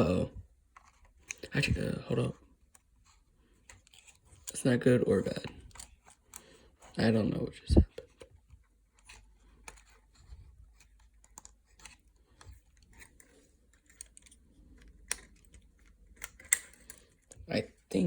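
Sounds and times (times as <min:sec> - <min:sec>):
plastic parts clicking and tapping: 0:05.3 - 0:07.0, 0:07.8 - 0:17.5.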